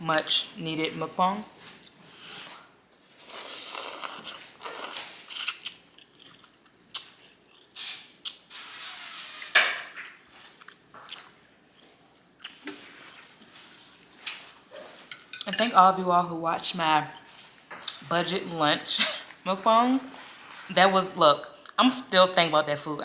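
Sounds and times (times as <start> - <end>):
wet chewing: 3.2 - 8.4, 10.2 - 15.5
noodles being slurped: 3.2 - 9.4.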